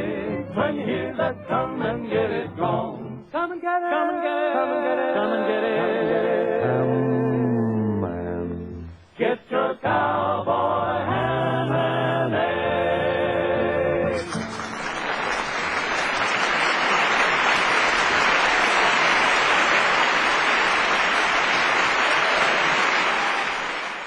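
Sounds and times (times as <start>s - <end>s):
close harmony singing: 0.0s - 14.4s
audience applauding: 14.2s - 24.0s.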